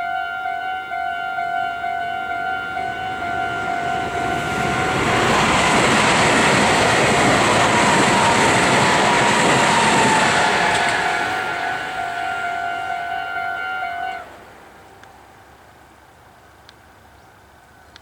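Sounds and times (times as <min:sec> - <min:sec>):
level crossing bell ringing: 0:00.0 - 0:05.0
electric train passing: 0:00.0 - 0:16.6.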